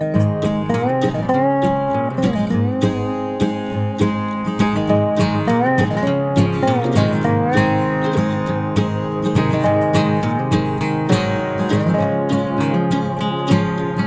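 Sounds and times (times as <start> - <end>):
acoustic guitar music with beat: 0.0 - 14.0.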